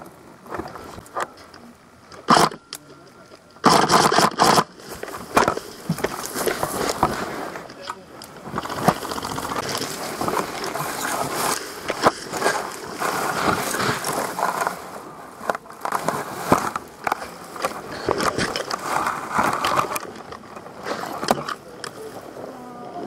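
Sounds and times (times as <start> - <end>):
sharp clicks: 2.1 - 4.7.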